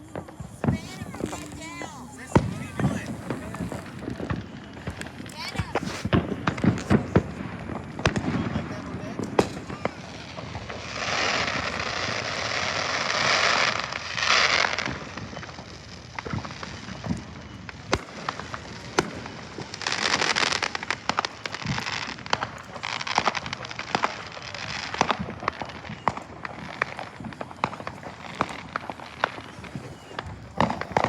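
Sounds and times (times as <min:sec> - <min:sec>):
fireworks hissing spray: 0:00.0 - 0:14.8, 0:26.0 - 0:31.0
fireworks crackling pops: 0:00.0 - 0:31.0.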